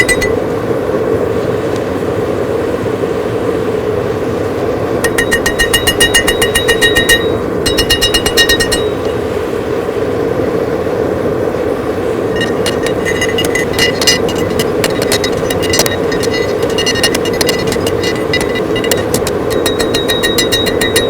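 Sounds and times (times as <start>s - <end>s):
rapid hammer blows on steel: 5.1s - 9.4s, 12.4s - 21.0s.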